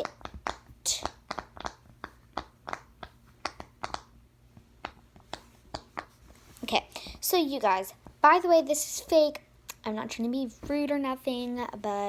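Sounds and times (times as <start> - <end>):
fidget toy popping: 0.0 - 4.2.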